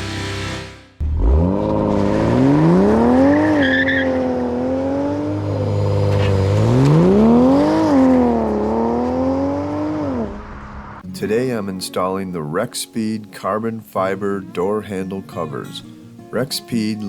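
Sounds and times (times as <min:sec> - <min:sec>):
car engine revving: 0:00.0 - 0:11.0.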